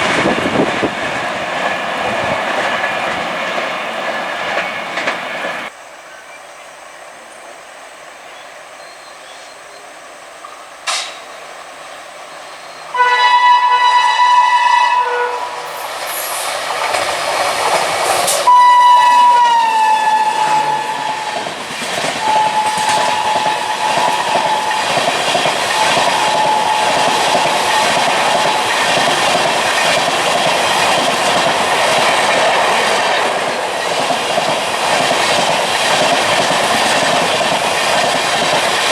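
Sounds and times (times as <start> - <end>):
train coaches rumbling on rails: 0.0 - 38.9
locomotive horn blasts: 12.9 - 15.8, 18.4 - 21.5, 22.2 - 25.0, 25.7 - 28.0.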